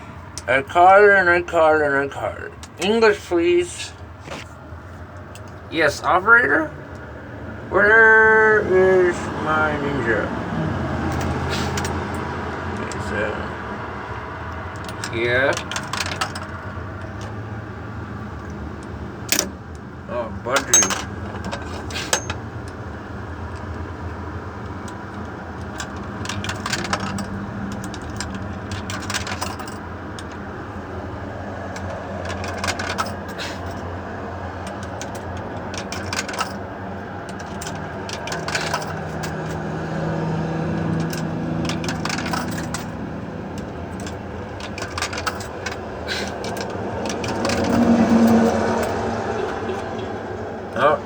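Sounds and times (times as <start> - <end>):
coins clinking into payphone: 11.0 - 13.2, 14.6 - 17.4, 20.5 - 23.8, 24.4 - 33.9, 34.5 - 50.0.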